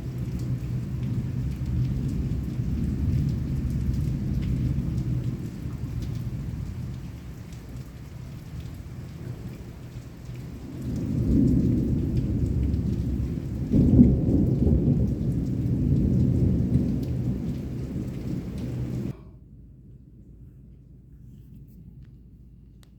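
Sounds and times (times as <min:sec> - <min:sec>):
rolling thunder: 0:00.0 - 0:07.3, 0:09.1 - 0:19.2
heavy rain: 0:00.0 - 0:19.2.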